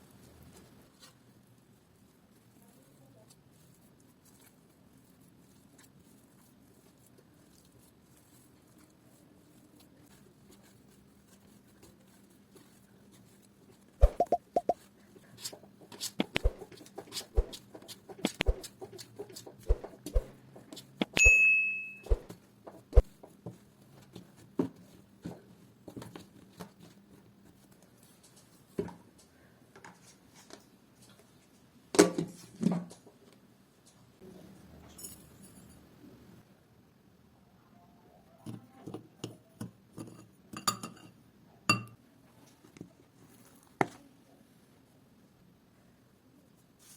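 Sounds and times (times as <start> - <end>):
utensils and containers knocking: 14.0 - 14.8
ringing clink: 21.2 - 22.1.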